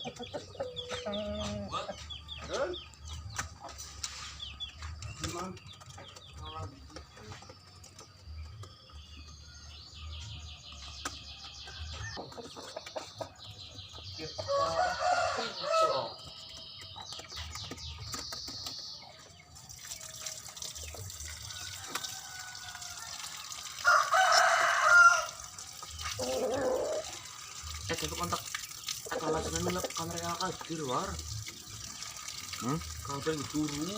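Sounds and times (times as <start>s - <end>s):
lovebirds chattering trills: 0.0s - 33.9s
rooster crowing: 14.5s - 16.2s, 21.5s - 25.5s.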